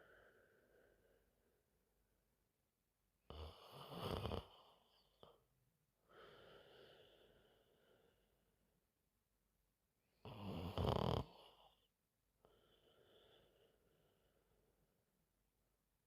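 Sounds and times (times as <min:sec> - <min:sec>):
woman snoring: 0:03.3 - 0:04.8, 0:10.2 - 0:11.8.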